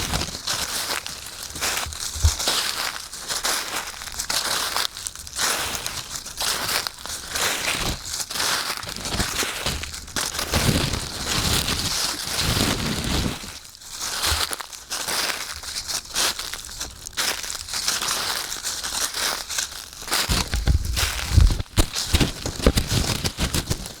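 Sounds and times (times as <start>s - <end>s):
footsteps crunching dry leaves: 11.0s - 24.0s.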